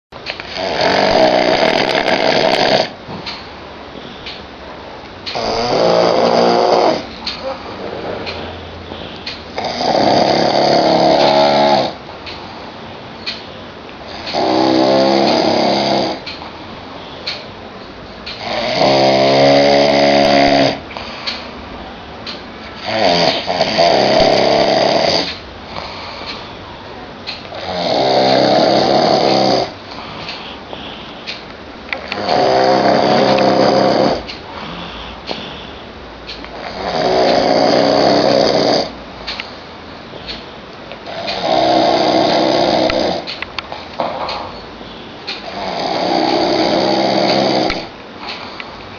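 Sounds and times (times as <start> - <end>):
person snoring loudly: 0.4 - 3.0, 5.3 - 8.2, 9.5 - 12.0, 14.1 - 16.2, 18.4 - 20.8, 22.8 - 26.2, 27.5 - 30.9, 32.0 - 35.6, 36.6 - 39.0, 41.1 - 43.3, 45.4 - 47.9
quiet breathing: 25.2 - 27.0, 28.4 - 31.4, 32.0 - 36.0, 42.4 - 48.9
quiet breath: 34.5 - 35.9.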